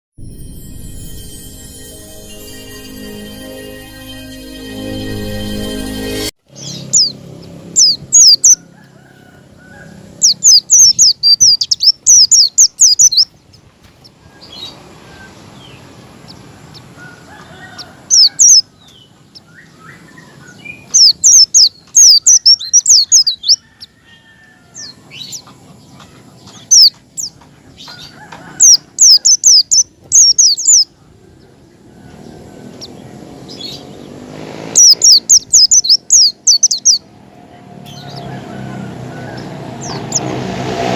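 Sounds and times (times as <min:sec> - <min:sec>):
bird singing rapid high chirps: 0:06.5 - 0:08.6, 0:10.1 - 0:16.9, 0:17.7 - 0:23.8, 0:24.8 - 0:30.9, 0:34.8 - 0:37.1.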